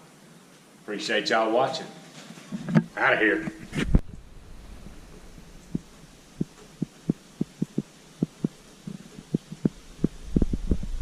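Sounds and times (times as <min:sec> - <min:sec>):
low rumble: 0:03.5 - 0:08.6, 0:09.2 - 0:11.0
soft low thumps: 0:03.5 - 0:11.0.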